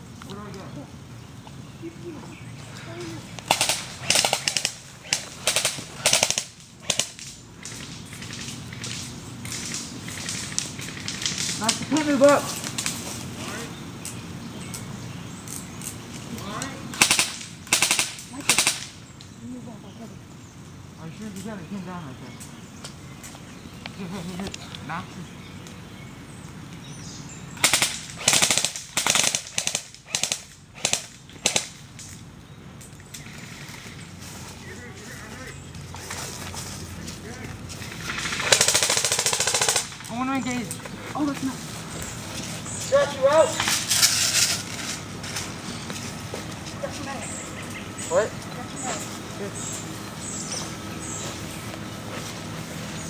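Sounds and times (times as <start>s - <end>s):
airsoft guns firing bursts: 3.4s - 12.9s, 16.9s - 19.0s, 27.6s - 31.8s, 37.8s - 40.4s.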